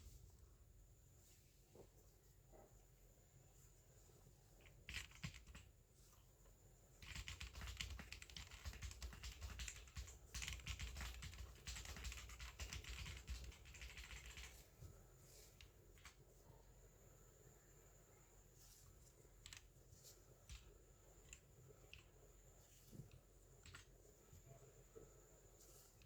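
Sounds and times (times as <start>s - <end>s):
mechanical keyboard typing: 4.8s - 5.7s, 7.0s - 14.6s, 19.4s - 19.7s.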